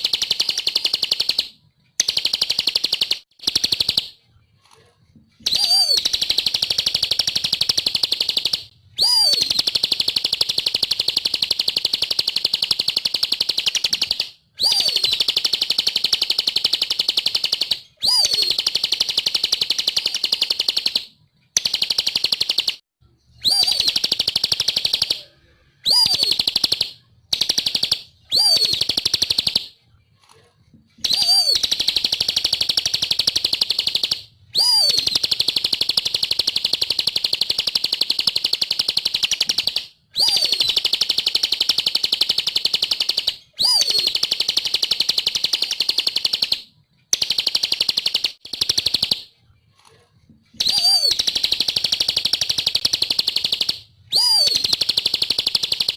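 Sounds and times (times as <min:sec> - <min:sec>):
bird high-pitched trills: 0:05.5 - 0:20.8, 0:23.3 - 0:29.7, 0:31.0 - 0:36.9, 0:37.6 - 0:46.5, 0:50.6 - 0:55.9.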